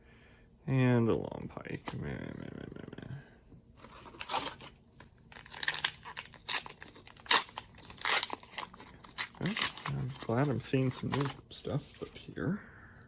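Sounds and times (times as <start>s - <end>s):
wrapper tearing and crinkling: 4.1s - 4.7s, 5.3s - 11.4s.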